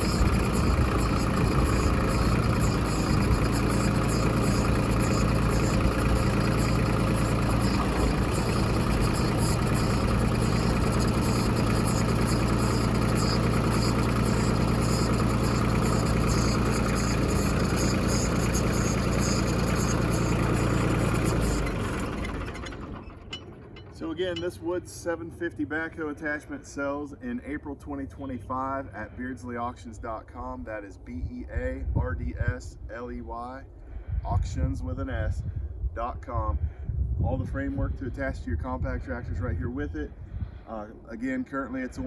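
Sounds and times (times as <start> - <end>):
tractor diesel engine running: 0.0 - 30.6.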